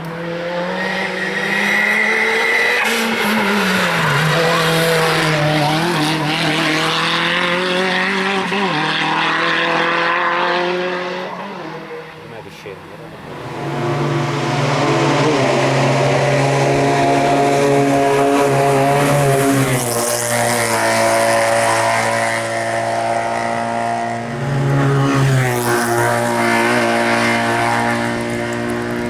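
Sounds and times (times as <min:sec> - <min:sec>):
race car engine at high revs: 0:00.0 - 0:29.0.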